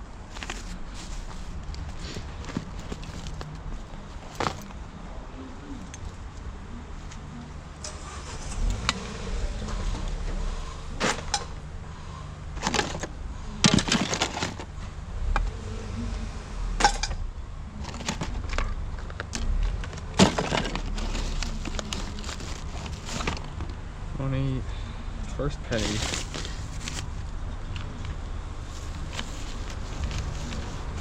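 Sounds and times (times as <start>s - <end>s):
objects clattering and knocking: 0.3s - 4.8s, 11.0s - 11.5s, 12.6s - 14.7s, 16.8s - 17.2s, 17.8s - 23.7s, 25.7s - 27.2s, 28.7s - 31.0s.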